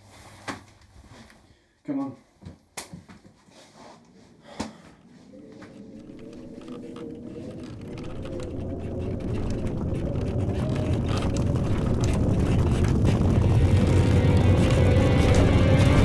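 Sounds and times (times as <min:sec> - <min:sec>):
low rumble: 0:05.0 - 0:16.0
steady hum: 0:05.0 - 0:16.0.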